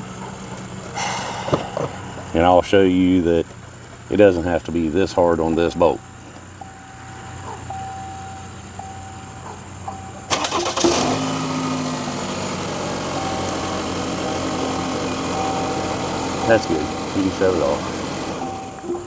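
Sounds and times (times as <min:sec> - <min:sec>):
car engine cranking and idling: 0:00.0 - 0:19.0
low hum: 0:00.8 - 0:03.6
short electronic beeps: 0:06.0 - 0:10.2.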